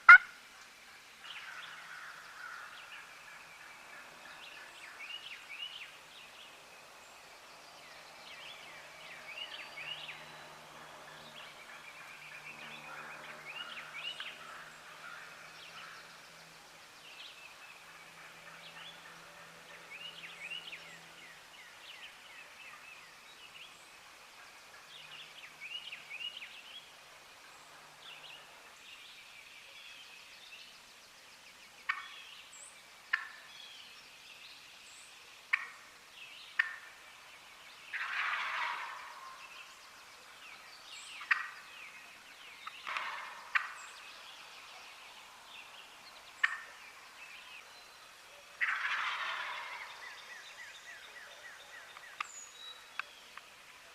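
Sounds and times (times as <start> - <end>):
turkey gobbling: 0.0 - 0.3, 37.9 - 39.4, 41.2 - 41.6, 42.9 - 43.8, 46.4 - 46.8, 48.6 - 50.2
birds calling: 0.0 - 0.4, 35.0 - 53.9.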